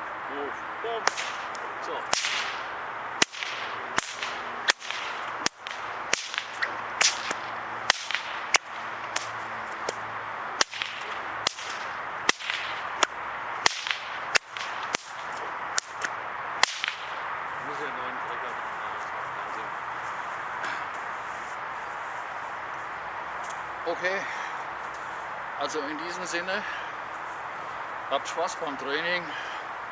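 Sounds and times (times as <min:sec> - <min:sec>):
bullwhip cracking: 0:00.9 - 0:17.9.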